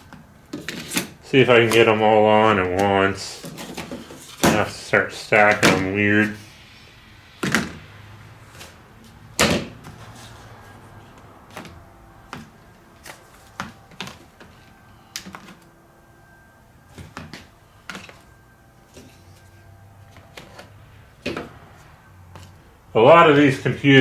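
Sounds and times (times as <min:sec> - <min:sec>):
plastic battery packs clacking: 0:02.7 - 0:04.7.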